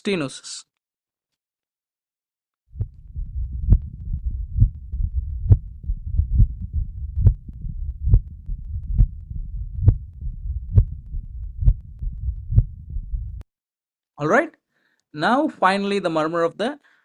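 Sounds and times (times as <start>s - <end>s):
low rumbling heart murmur: 2.7s - 13.4s
sharp heart sounds: 2.7s - 13.4s.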